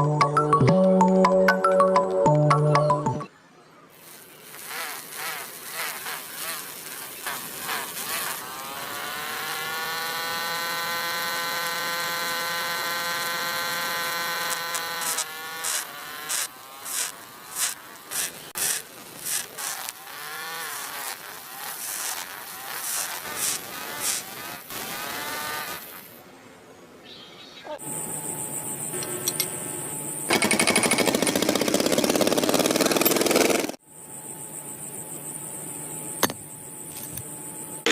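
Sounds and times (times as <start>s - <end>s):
small electric motor buzzing: 4.0s - 26.2s.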